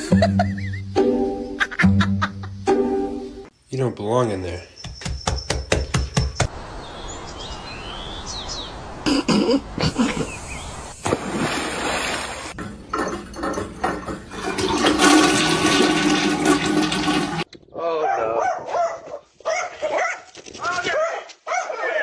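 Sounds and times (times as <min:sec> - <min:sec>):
water rushing and gurgling: 0:10.7 - 0:17.5.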